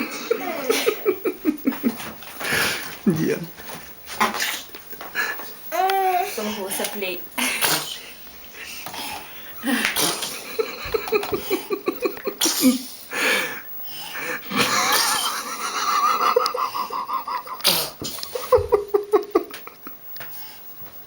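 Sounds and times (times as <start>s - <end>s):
rapid pulsed laughing: 0.0s - 2.1s, 8.5s - 12.8s, 13.6s - 17.6s
girl sneezing: 7.4s - 8.2s, 9.6s - 10.4s, 12.4s - 13.0s.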